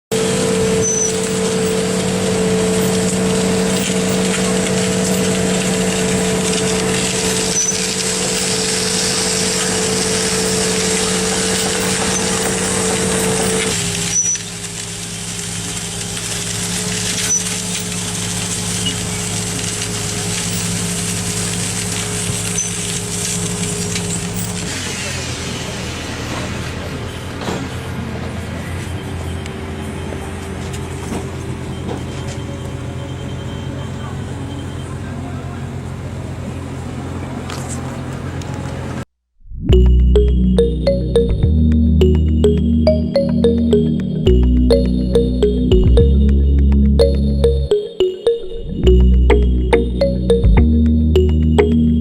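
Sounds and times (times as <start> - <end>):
construction machine engine droning: 0.2 - 14.0.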